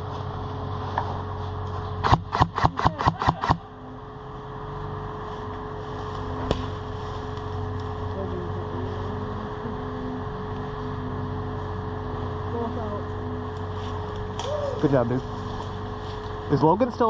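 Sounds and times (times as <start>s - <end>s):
low hum: 0.0s - 17.0s
airsoft gun shots: 2.0s - 3.6s.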